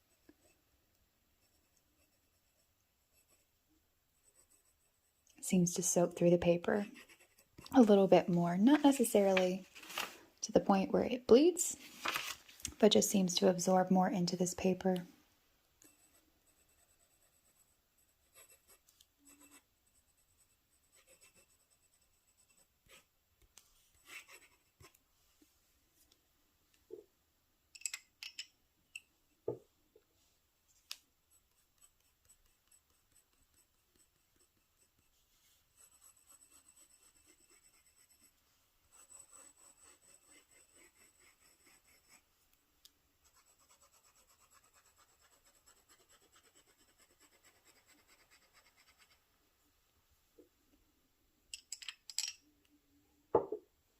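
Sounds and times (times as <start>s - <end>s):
pen scratching on paper: 1.4s - 3.5s, 6.5s - 7.9s, 15.8s - 23.1s, 23.9s - 25.0s, 31.3s - 42.2s, 43.2s - 49.2s.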